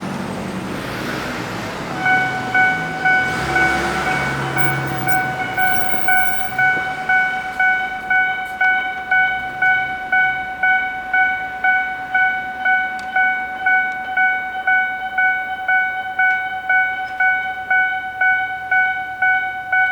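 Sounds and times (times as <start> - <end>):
road traffic: 0.0 - 18.6
level crossing alarm dinging: 0.1 - 19.9.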